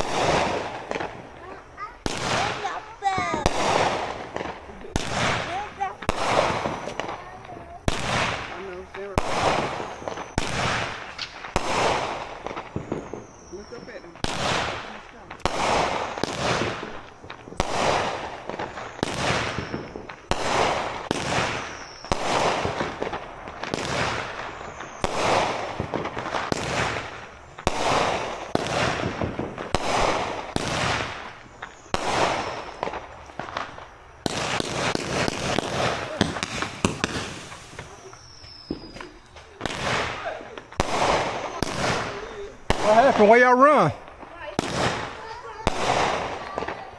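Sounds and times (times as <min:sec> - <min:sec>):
firework bangs: 0:00.0 - 0:46.9
firework crackling: 0:00.0 - 0:46.9
falling whistles: 0:08.5 - 0:43.9.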